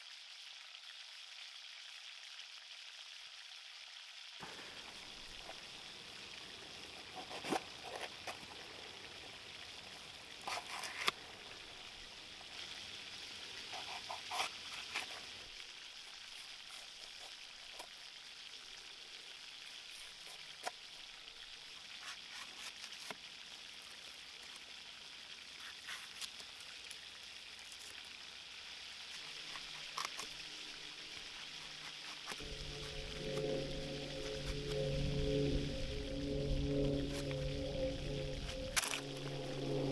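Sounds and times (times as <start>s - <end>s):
food sizzling over campfire: 0.0s - 39.9s
music: 29.5s - 39.9s.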